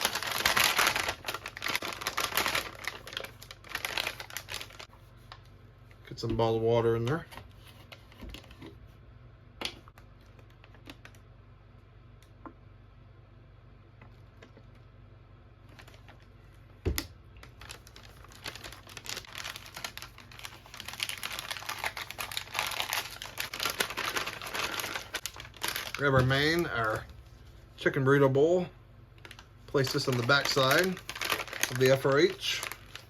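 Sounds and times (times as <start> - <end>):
ration heater fizzing crackle: 17.3 - 27.4, 29.1 - 33.0.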